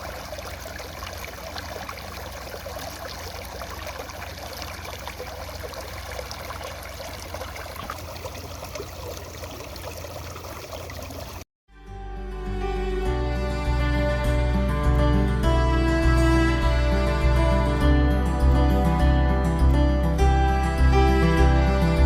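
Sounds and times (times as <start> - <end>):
water running and trickling: 0.0 - 11.5.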